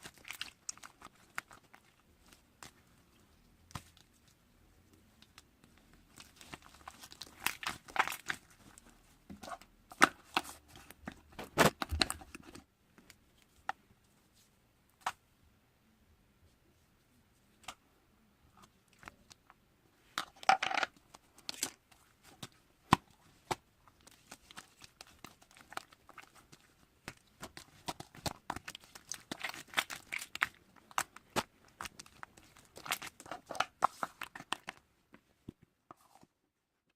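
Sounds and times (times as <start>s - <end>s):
slime squishing: 0.0s - 12.7s, 21.0s - 34.8s.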